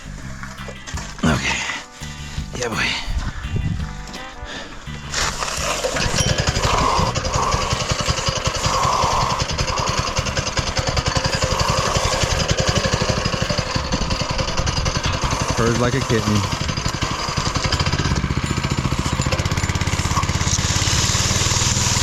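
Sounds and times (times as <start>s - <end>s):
small gasoline engine chugging: 5.1s - 22.0s.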